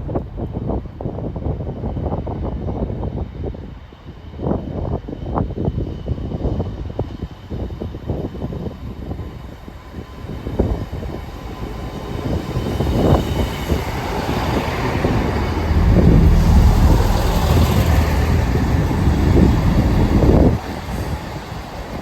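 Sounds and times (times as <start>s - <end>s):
train rumbling past: 8.2s - 22.0s.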